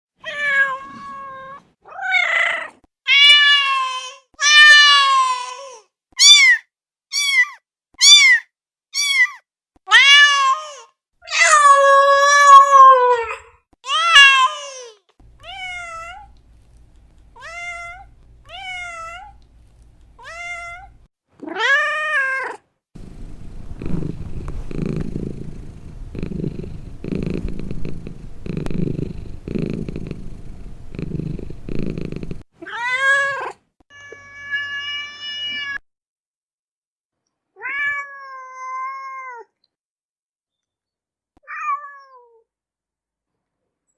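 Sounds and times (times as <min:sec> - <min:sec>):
cat purring: 0:23.0 - 0:32.4.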